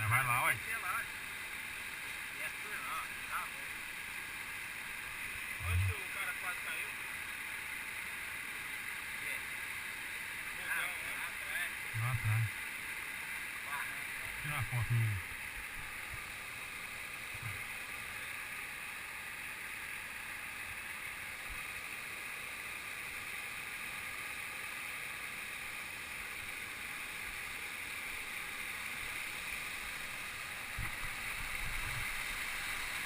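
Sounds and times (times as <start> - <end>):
waterfall rushing: 13.4 - 18.6, 26.0 - 33.0.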